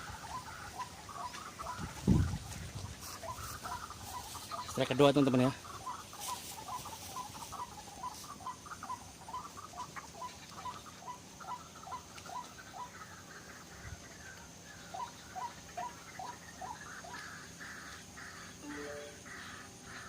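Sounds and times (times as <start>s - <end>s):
bird calling squeaky notes: 18.6s - 19.7s.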